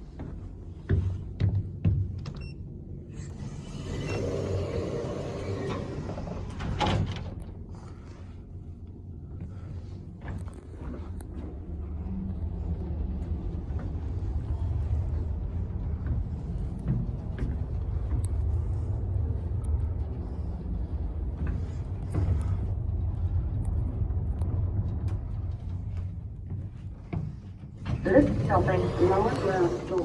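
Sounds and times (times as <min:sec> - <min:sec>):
faint clicks and ticks: 0:10.0 - 0:27.9
lift car rumbling: 0:28.0 - 0:30.0.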